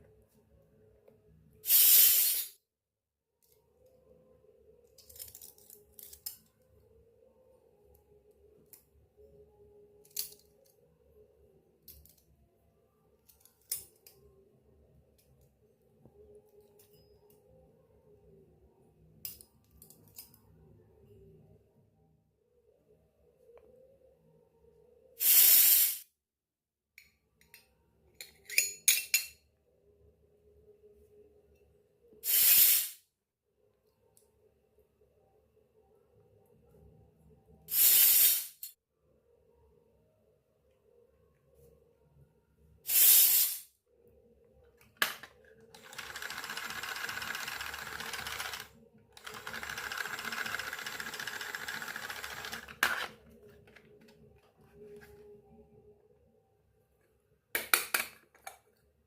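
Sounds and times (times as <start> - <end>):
short hiss: 1.7 - 2.6, 25.2 - 26.1, 32.2 - 33.0, 37.7 - 38.6, 42.9 - 43.7.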